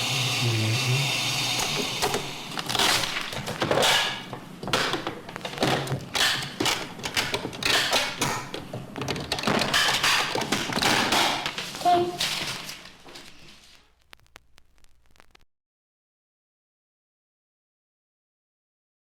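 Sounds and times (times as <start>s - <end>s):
steady mechanical noise: 0.0s - 15.2s
knocks taps and clatter: 2.1s - 11.7s.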